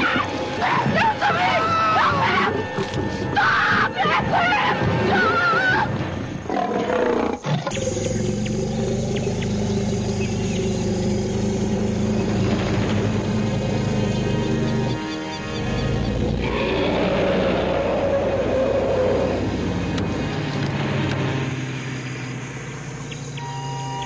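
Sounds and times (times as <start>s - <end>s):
wild animal wavering cries: 0.0s - 6.0s
film soundtrack music: 0.0s - 6.8s, 11.4s - 24.0s.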